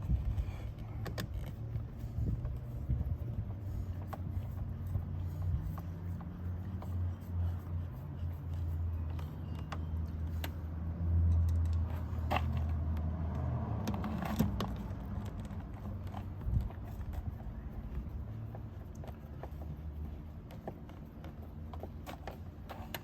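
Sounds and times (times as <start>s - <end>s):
steady low hum: 0.0s - 13.1s.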